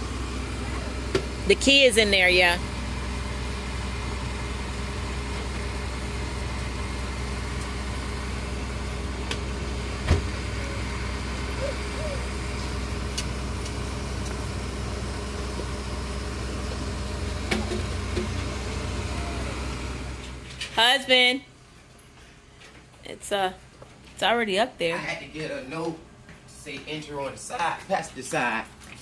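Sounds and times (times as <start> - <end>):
engine idling: 0.0 - 20.6.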